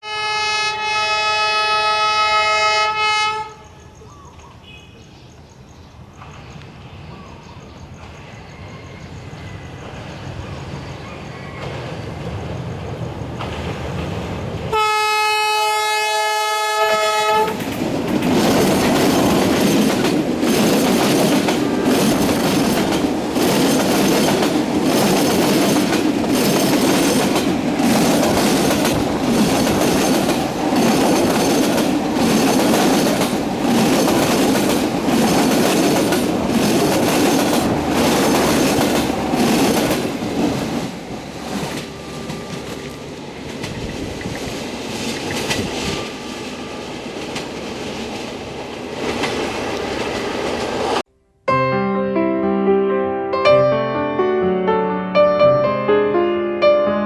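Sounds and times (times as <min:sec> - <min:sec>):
locomotive horn: 0:00.0 - 0:03.8, 0:14.7 - 0:17.7
train rumbling across bridge: 0:00.1 - 0:51.0.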